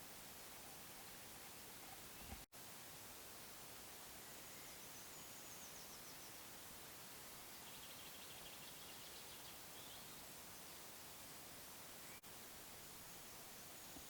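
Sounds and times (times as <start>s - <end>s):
steady hiss: 0.0s - 14.0s
songbird trills: 4.2s - 6.6s, 7.4s - 11.0s, 11.8s - 12.3s.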